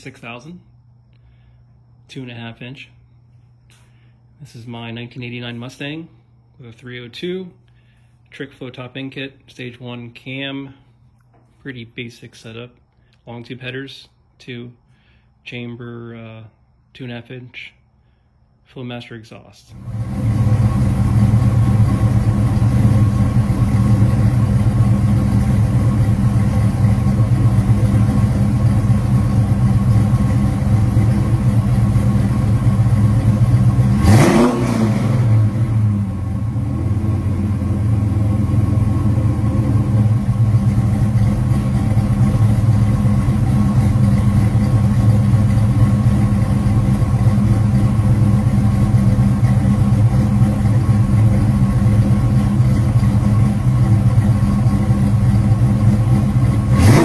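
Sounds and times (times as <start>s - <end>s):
car engine idling and revving: 19.7s - 57.0s.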